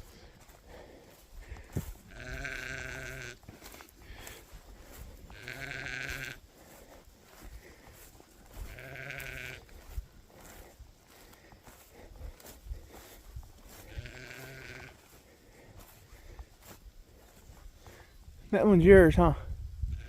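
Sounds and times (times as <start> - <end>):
sheep bleating: 2.0 - 3.6, 5.2 - 6.4, 8.5 - 9.8, 13.7 - 15.2.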